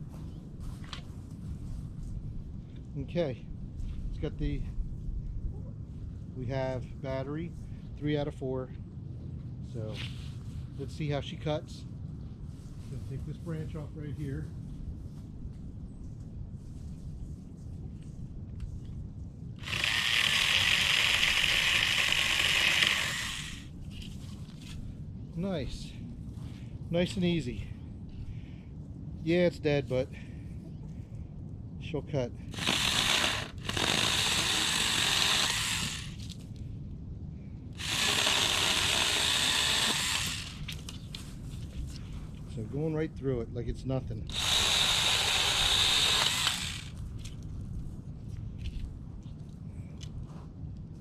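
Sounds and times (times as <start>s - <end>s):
battery chainsaw cutting branch: 19.6s - 23.7s, 32.5s - 36.3s, 37.8s - 40.9s, 44.3s - 47.0s.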